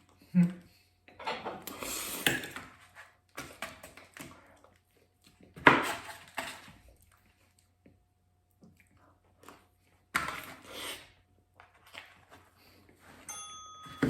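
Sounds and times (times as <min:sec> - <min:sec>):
chewing and mouth noises: 0:06.8 - 0:09.9.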